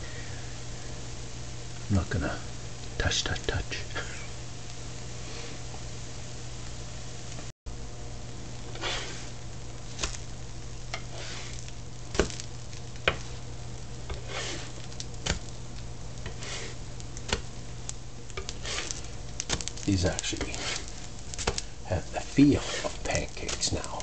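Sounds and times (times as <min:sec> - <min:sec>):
pancakes sizzling on grill: 0:00.0 - 0:24.0
steady low hum: 0:00.0 - 0:24.0
spatula scrapes: 0:08.7 - 0:09.4, 0:10.9 - 0:12.4, 0:14.1 - 0:15.5, 0:16.2 - 0:17.4, 0:18.4 - 0:19.7, 0:20.3 - 0:24.0.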